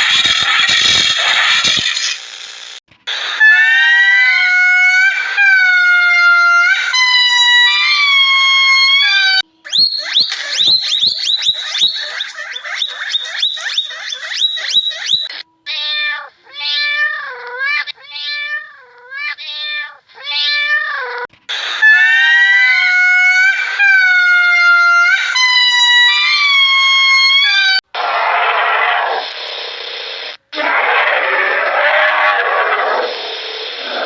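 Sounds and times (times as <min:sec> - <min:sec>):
cat meowing: 0:15.0 - 0:27.8.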